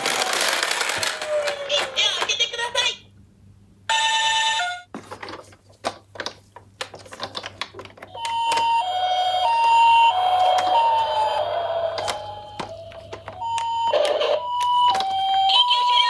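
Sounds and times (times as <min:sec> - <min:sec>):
toy ambulance hi-lo siren: 0:00.0 - 0:02.3, 0:08.1 - 0:16.0
tone sliding down in pitch: 0:08.8 - 0:14.5.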